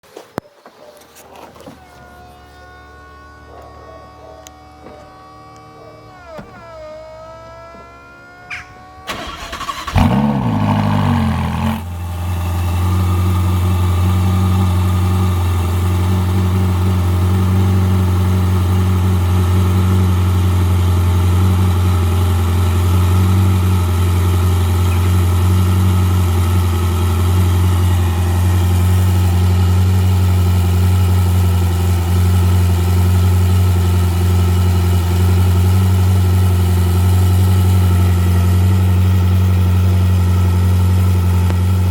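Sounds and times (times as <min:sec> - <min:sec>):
car engine starting and idling: 0:04.2 - 0:41.9.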